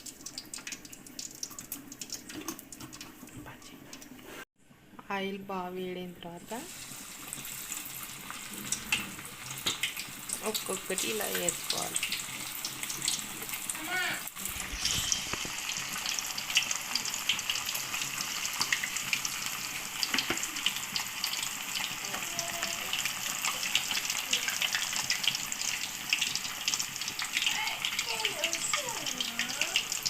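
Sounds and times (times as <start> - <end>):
chicken sizzling in hot oil: 6.5 - 30.0.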